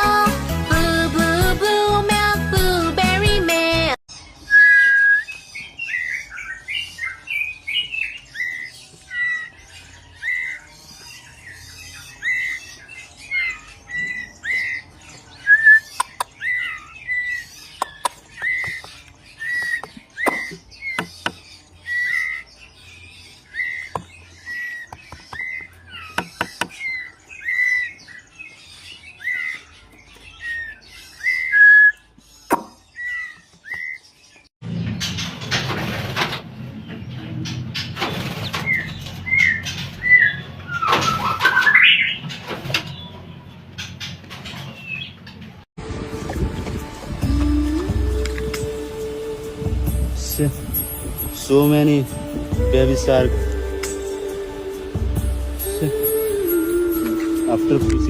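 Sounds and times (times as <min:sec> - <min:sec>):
bird chirps: 0:04.1 - 0:35.2.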